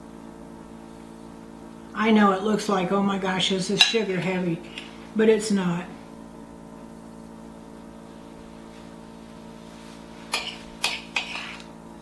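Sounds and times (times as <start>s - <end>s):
steady low hum: 0.0s - 12.0s
kitchenware clattering: 10.3s - 11.6s.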